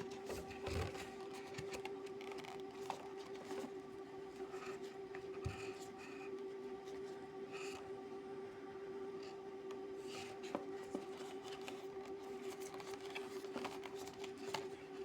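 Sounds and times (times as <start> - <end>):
packaging rustling: 0.0 - 3.8, 10.3 - 15.0
steady hum: 0.0 - 15.0.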